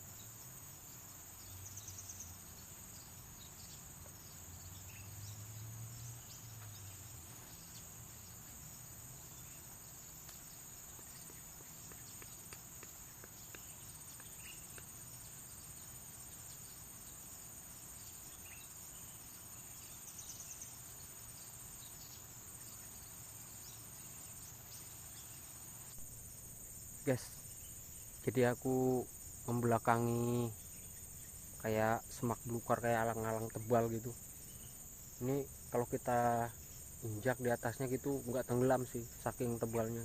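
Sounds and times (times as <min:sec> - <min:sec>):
insects chirping: 0:00.0 - 0:40.0
faint clicks: 0:10.2 - 0:15.0.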